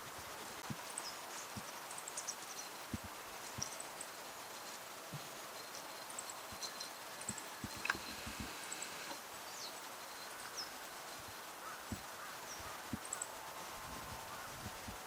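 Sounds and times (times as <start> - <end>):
high thin bird calls: 5.8 - 10.8.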